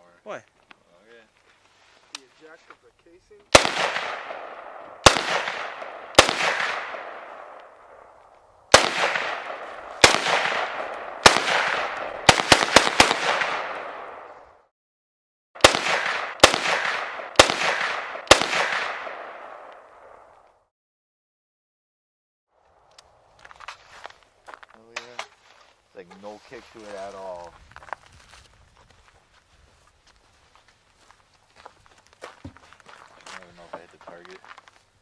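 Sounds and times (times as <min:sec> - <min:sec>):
rifle shots echoing: 0:03.5 - 0:14.6, 0:15.6 - 0:20.4.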